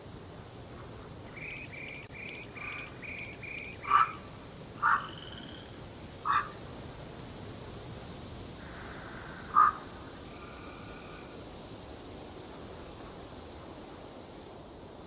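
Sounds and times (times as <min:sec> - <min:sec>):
faint background hiss: 0:00.0 - 0:15.0
harsh bird calls: 0:01.3 - 0:05.7, 0:06.3 - 0:06.6, 0:08.7 - 0:09.8.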